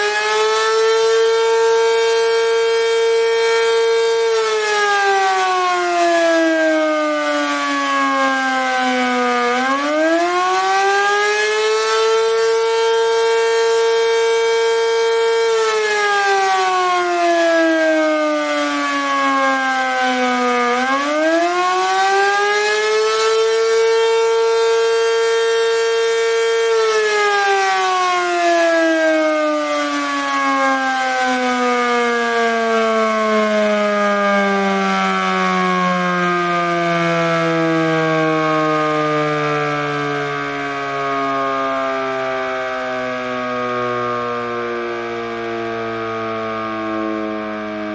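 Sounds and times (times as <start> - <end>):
warning siren rising and falling: 0.0 - 47.9.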